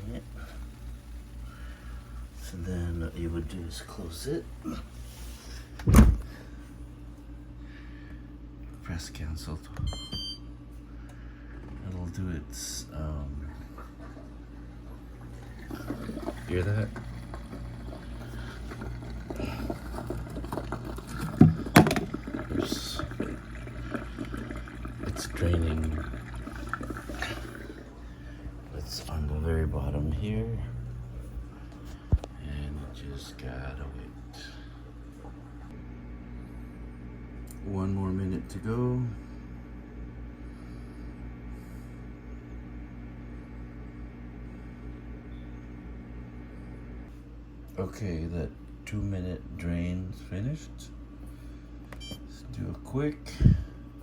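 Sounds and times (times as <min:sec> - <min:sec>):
drain pump humming: 0:00.0 - 0:54.0
water gurgling: 0:13.8 - 0:30.3.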